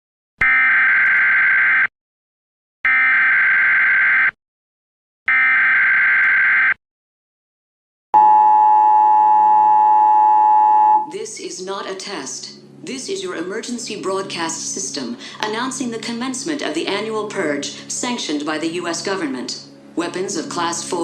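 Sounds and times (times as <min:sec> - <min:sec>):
two-tone attention signal: 0:08.2 - 0:11.1.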